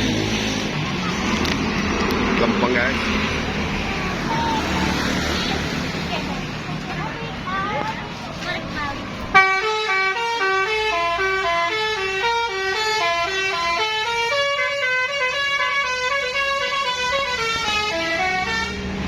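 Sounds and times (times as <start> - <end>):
musical bus horn melody: 9.3 - 18.9.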